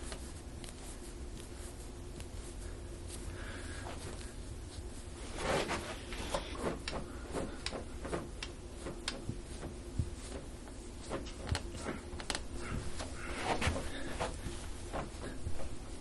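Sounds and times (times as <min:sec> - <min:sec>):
low room hum: 0:00.0 - 0:16.0
rustling on treatment table: 0:00.0 - 0:16.0
small clicks and taps: 0:11.3 - 0:12.5.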